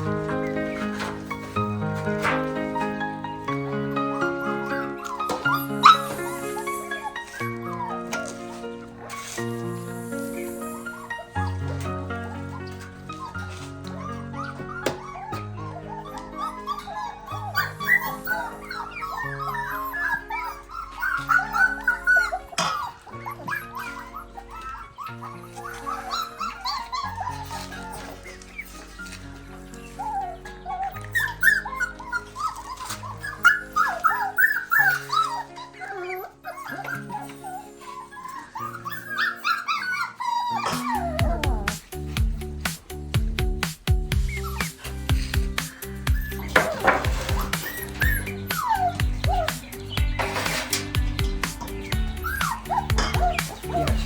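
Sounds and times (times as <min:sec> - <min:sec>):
background music held notes: 0:00.0 - 0:54.0
dogs whining and whimpering: 0:00.0 - 0:54.0.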